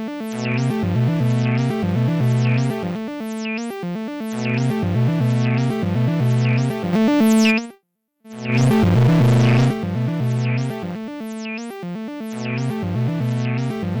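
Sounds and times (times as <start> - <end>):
synthesizer note sequence: 4.3 - 7.7, 8.4 - 14.0.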